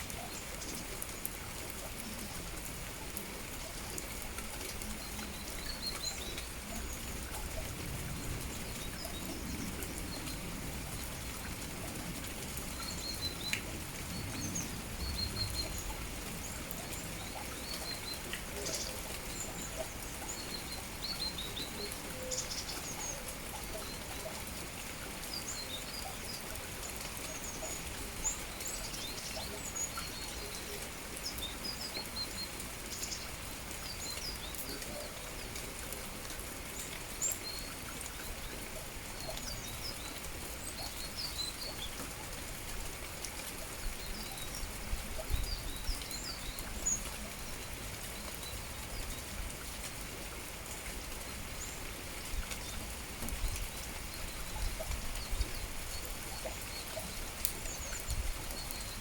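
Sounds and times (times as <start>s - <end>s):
steady rain: 0.0s - 59.0s
small birds chirping: 51.2s - 59.0s.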